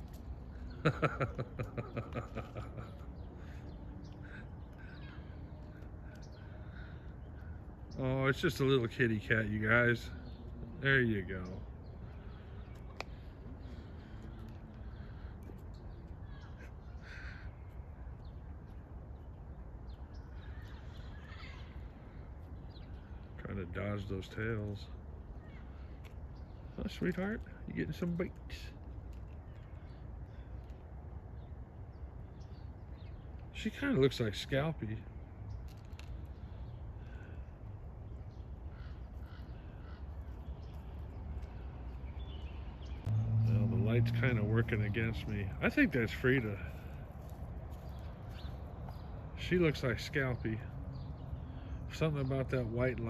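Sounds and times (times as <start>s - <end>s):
harsh bird calls: 0.0s - 53.0s
low outdoor rumble: 19.8s - 53.0s
steady low rumble: 43.0s - 49.4s.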